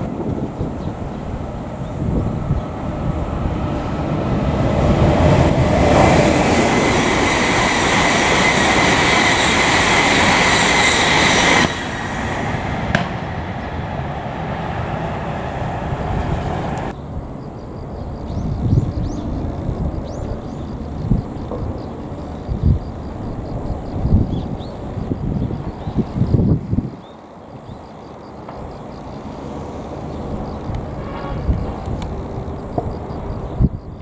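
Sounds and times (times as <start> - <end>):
railway cars rumbling on track: 0.0 - 17.4, 28.4 - 34.0
high-pitched wheel whine: 1.3 - 16.9.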